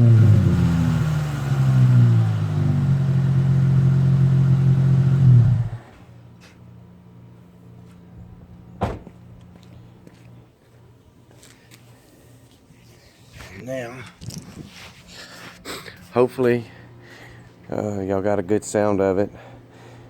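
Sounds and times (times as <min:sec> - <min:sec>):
car engine idling: 0:00.0 - 0:06.0.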